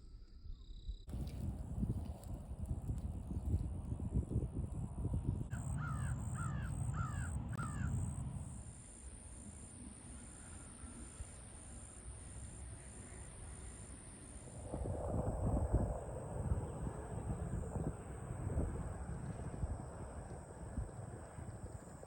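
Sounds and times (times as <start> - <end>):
bird cawing: 5.5 - 8.2
low rumble: 14.6 - 21.8.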